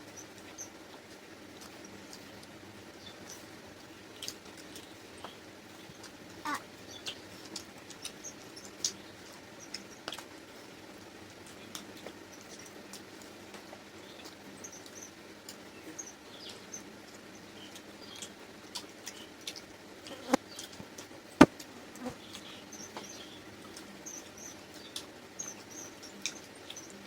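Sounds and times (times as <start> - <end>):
chewing clicks and smacks: 4.2 - 6.2, 6.9 - 10.4, 16.4 - 23.9.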